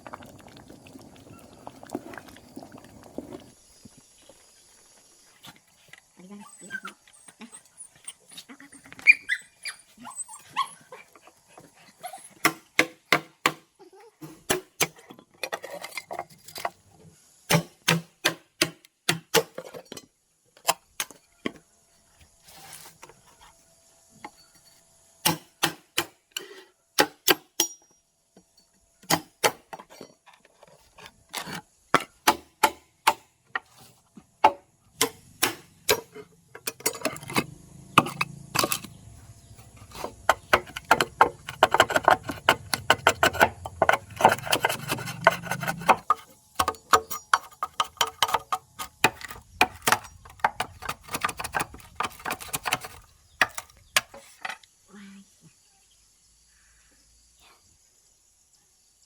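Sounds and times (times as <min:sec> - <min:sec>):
animal yips: 0:06.4 - 0:11.0
sharp chopping strikes: 0:17.5 - 0:19.6, 0:25.2 - 0:26.2, 0:32.2 - 0:33.3, 0:34.4 - 0:36.2.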